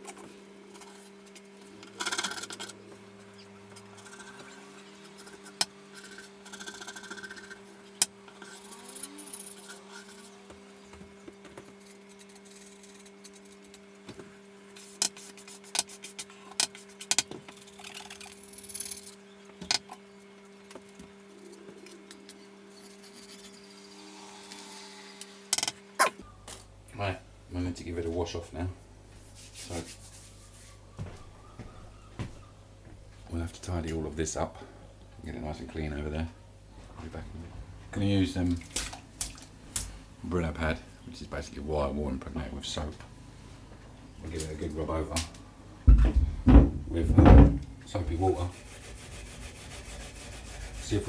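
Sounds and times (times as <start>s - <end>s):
steady low hum: 0.0s - 51.0s
scraper scraping wood: 8.3s - 10.5s, 11.6s - 13.8s, 22.4s - 25.0s, 48.2s - 51.0s.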